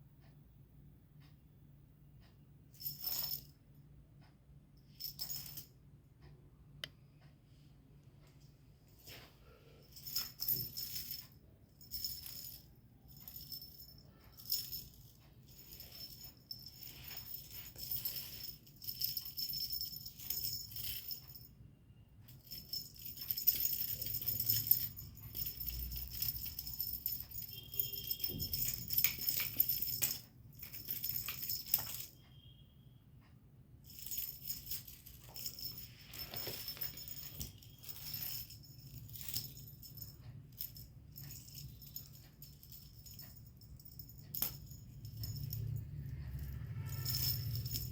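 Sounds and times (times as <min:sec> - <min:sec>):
small bell jingling: 0:02.7 - 0:03.6, 0:04.9 - 0:05.7, 0:09.8 - 0:21.6, 0:22.3 - 0:32.6, 0:33.8 - 0:47.9.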